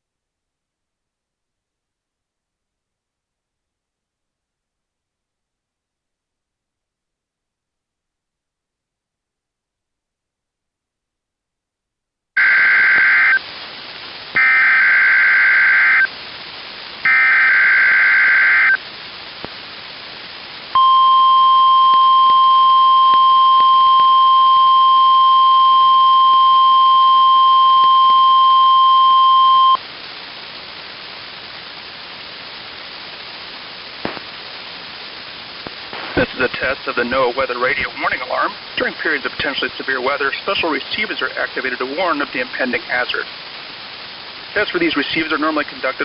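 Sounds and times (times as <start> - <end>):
radio hiss: 12.4 - 46.0
steady warning alarm tone: 14.4 - 16.1, 17.1 - 18.8.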